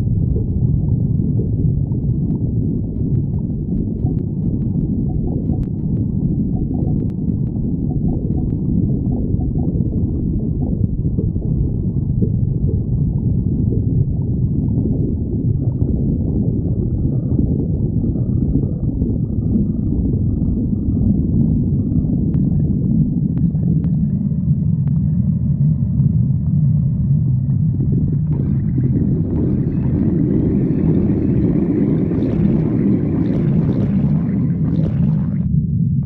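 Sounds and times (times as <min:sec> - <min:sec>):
stomach growling: 0:00.0 - 0:35.6
faint clicks: 0:02.9 - 0:09.7.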